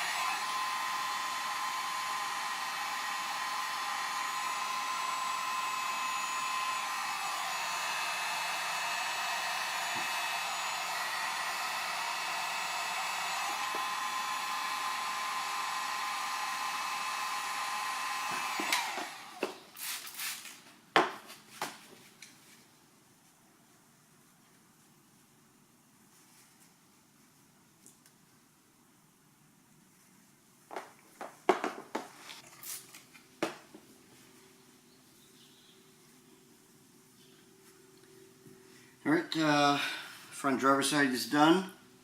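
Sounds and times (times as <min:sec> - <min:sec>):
heat gun blowing with whine: 0:00.0 - 0:20.6.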